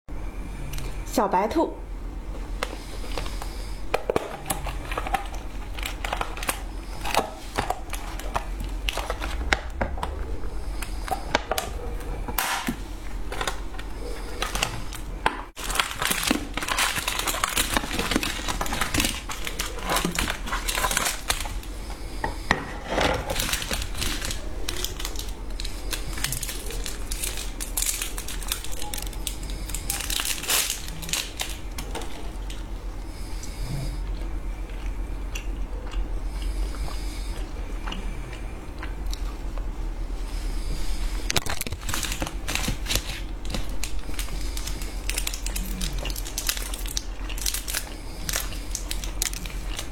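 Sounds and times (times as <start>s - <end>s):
plastic wrappers crinkling: 2.5s - 21.9s, 22.9s - 32.6s, 41.3s - 49.9s.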